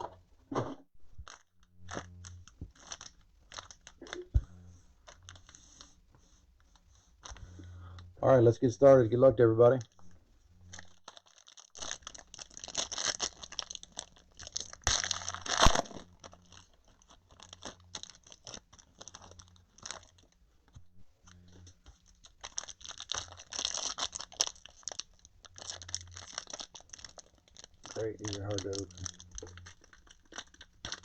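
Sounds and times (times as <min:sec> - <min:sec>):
foil wrapper tearing and crinkling: 0:01.3 - 0:04.3, 0:10.7 - 0:20.4, 0:21.2 - 0:31.0.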